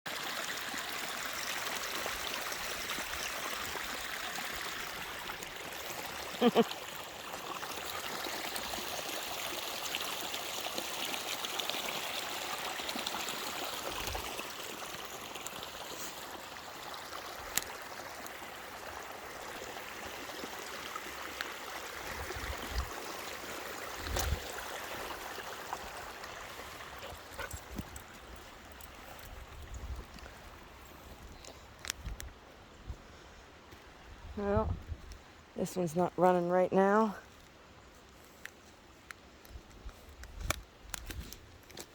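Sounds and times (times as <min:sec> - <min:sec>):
stream water rushing: 0:00.1 - 0:31.3.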